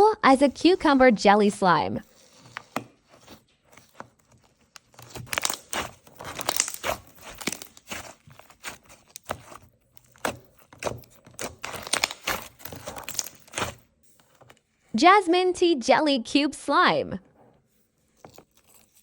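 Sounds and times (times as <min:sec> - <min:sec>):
slime squelching and popping: 0:03.8 - 0:13.9.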